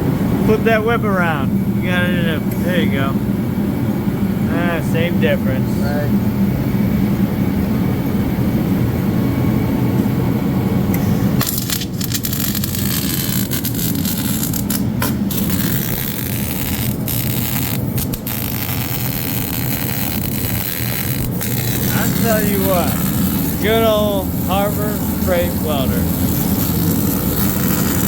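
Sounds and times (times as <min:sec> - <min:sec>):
welder arc crackling: 0:11.4 - 0:28.0.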